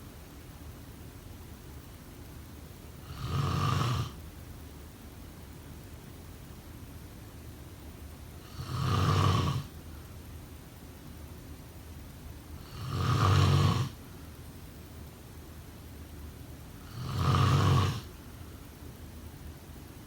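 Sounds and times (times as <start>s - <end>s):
faint steady hiss: 0.0s - 20.0s
snoring: 3.0s - 4.2s, 8.4s - 9.7s, 12.6s - 14.0s, 16.8s - 18.1s.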